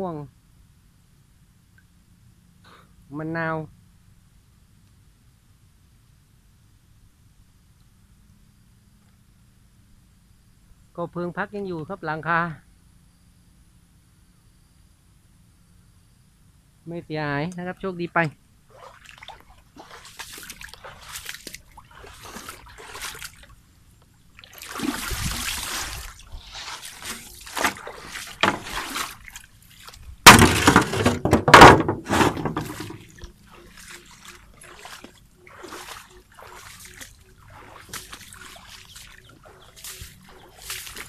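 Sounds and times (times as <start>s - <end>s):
footsteps wading through water: 18.7s - 41.0s.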